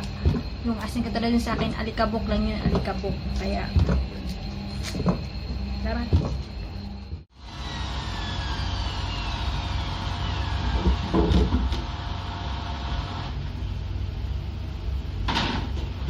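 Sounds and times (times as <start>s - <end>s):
low hum: 0.0s - 16.0s
washing machine motor whine: 0.0s - 16.0s.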